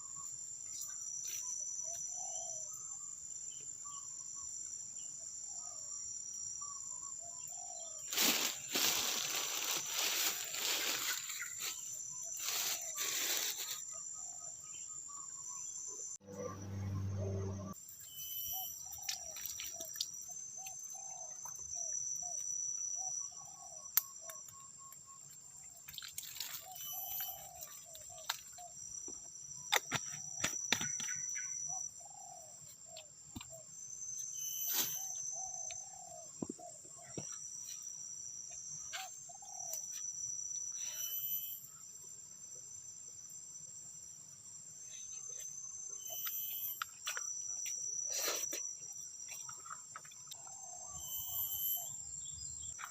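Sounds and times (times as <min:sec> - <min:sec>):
insects droning: 0:00.0 - 0:52.9
bird calling: 0:26.5 - 0:28.8.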